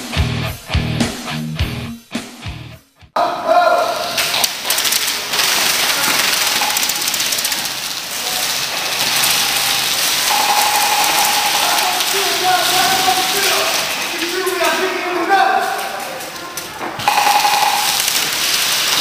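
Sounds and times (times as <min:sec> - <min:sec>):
steady hiss: 0:03.9 - 0:16.4, 0:17.1 - 0:19.0
airsoft guns firing: 0:04.2 - 0:14.8, 0:17.0 - 0:19.0.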